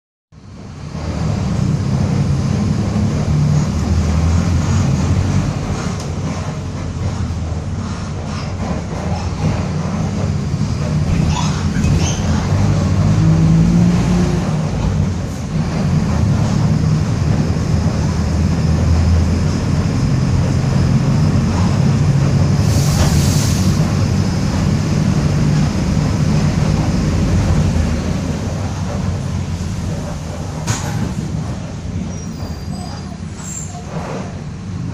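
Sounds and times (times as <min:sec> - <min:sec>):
bus diesel engine growling: 0:00.4 - 0:34.9
air hiss: 0:22.6 - 0:23.8.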